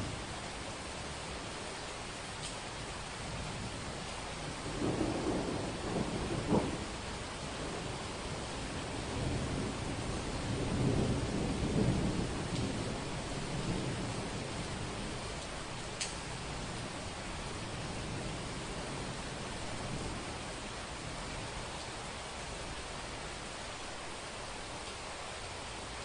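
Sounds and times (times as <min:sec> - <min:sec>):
heavy rain: 0:00.0 - 0:26.0
rolling thunder: 0:04.4 - 0:21.5.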